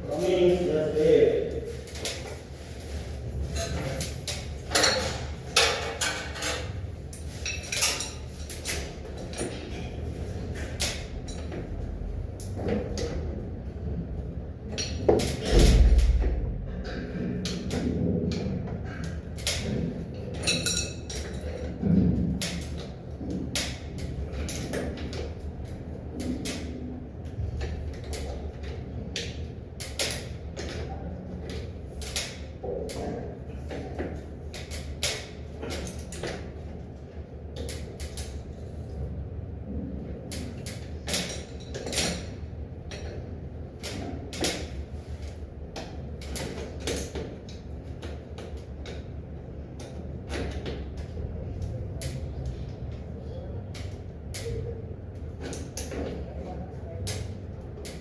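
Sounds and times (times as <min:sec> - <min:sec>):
steady low hum: 0:00.0 - 0:58.0
hand work clicks and knocks: 0:03.5 - 0:13.4, 0:14.6 - 0:38.6, 0:40.2 - 0:58.0.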